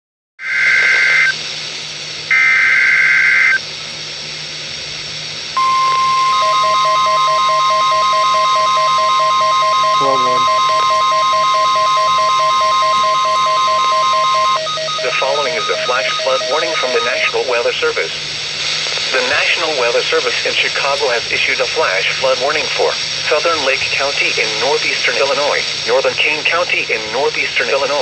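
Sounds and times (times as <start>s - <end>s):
warbling digital data bursts: 5.6s - 27.0s
steady attention tone: 5.6s - 28.0s.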